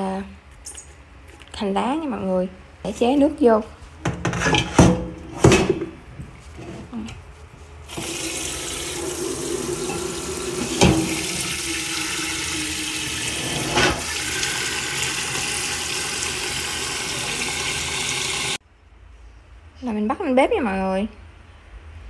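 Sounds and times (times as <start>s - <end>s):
water pouring into a pot: 7.9s - 18.6s.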